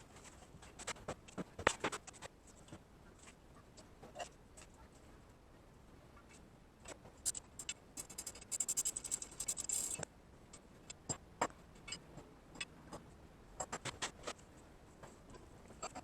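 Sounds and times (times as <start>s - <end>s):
metal parts clicking and clinking: 7.3s - 10.0s
rapid jangling ticks: 7.3s - 10.0s.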